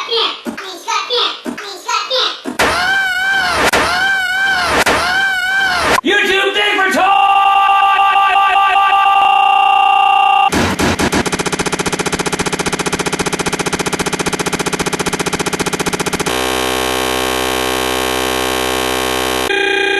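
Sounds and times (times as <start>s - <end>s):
distorted electronic buzz: 2.6s - 6.0s, 9.2s - 19.6s.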